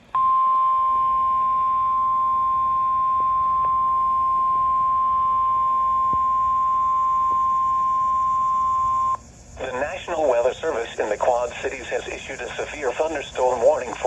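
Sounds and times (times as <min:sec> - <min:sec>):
steady alarm tone: 0:00.0 - 0:14.0.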